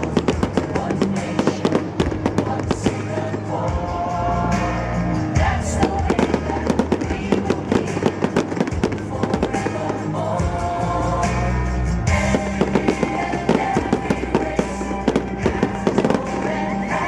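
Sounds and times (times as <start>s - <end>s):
fireworks popping and crackling: 0.0s - 4.8s, 5.6s - 10.6s, 11.2s - 17.0s
medley of patriotic songs: 0.0s - 17.0s.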